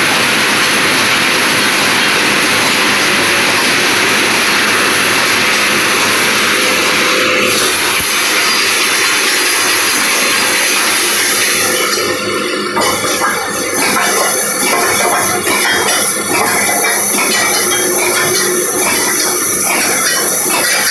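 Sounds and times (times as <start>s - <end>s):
welding machine running: 0.0s - 20.9s.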